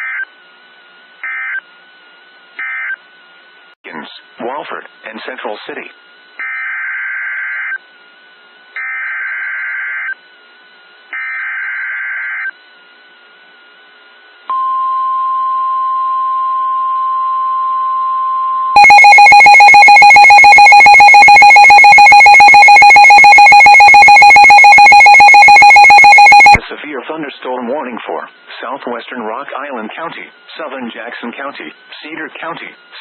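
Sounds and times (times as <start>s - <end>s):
two-tone attention signal: 14.5s - 26.6s
steady alert tone: 18.7s - 26.6s
warbling digital data bursts: 18.8s - 26.6s.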